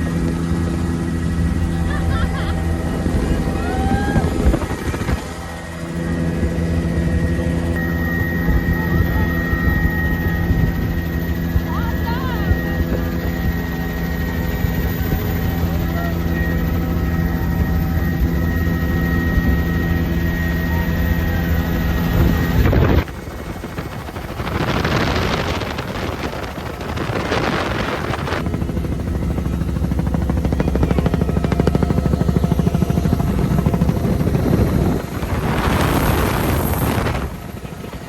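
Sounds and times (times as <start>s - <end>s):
helicopter engine whine: 0.0s - 38.0s
helicopter rotor beating: 0.0s - 38.0s.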